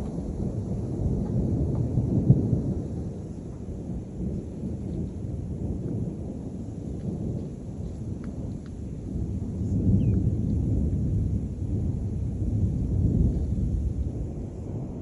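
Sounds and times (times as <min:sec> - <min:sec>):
thunder rumbling: 0:00.0 - 0:15.0.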